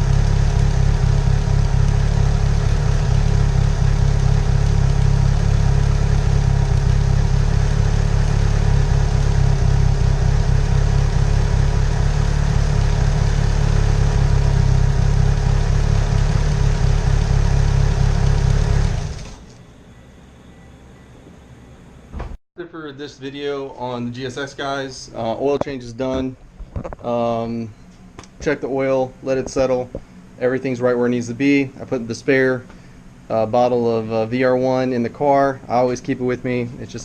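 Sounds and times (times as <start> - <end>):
car engine idling: 0.0 - 19.6
engine switching off: 0.0 - 19.7.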